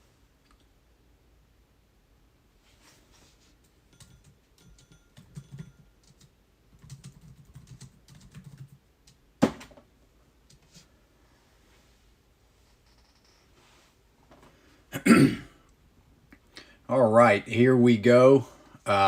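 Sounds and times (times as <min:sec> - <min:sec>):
typing on computer keyboard: 0:03.9 - 0:09.2.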